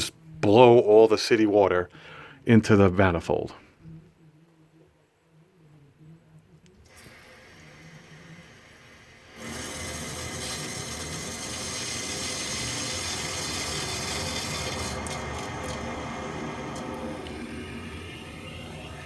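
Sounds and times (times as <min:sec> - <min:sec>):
water rushing through pipes: 0:09.2 - 0:19.0.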